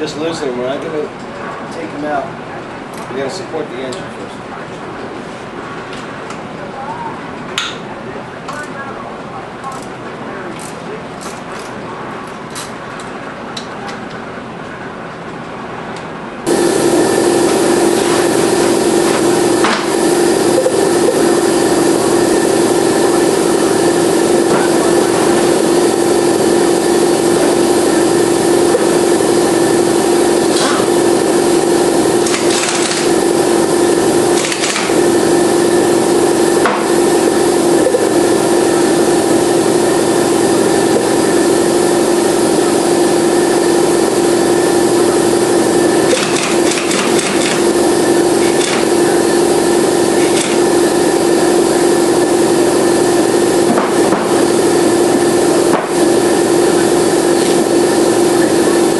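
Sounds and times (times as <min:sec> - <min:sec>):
shop machinery droning hum: 0:00.0 - 0:58.9.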